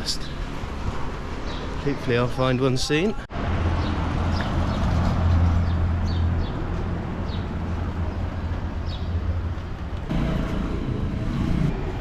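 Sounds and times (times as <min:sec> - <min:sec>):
low rumble of traffic or wind: 0:00.0 - 0:12.0.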